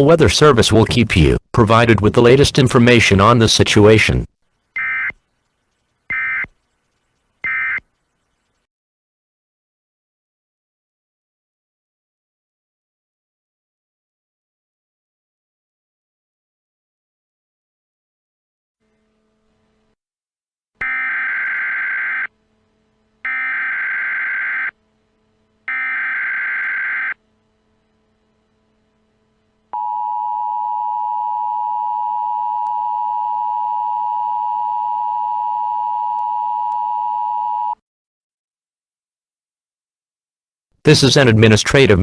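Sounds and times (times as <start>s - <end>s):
buzzing digital data bursts: 4.5s - 8.6s, 20.8s - 29.3s
two-tone attention signal: 4.8s - 5.2s, 6.1s - 6.5s, 7.4s - 8.5s.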